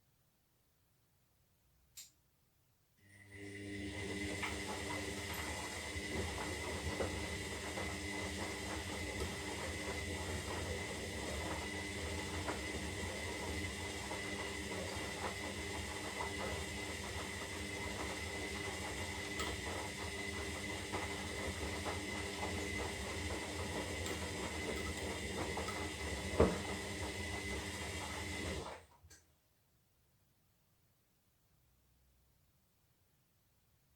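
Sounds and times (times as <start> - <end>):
washing machine running: 3.2 - 28.9.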